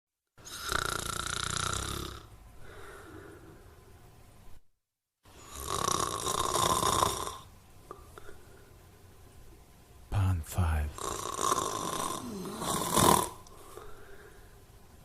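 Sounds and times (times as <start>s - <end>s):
person snoring: 0.4s - 2.3s, 5.4s - 7.5s, 10.6s - 13.4s
quiet breathing: 2.6s - 4.0s, 7.9s - 9.1s, 13.4s - 14.8s.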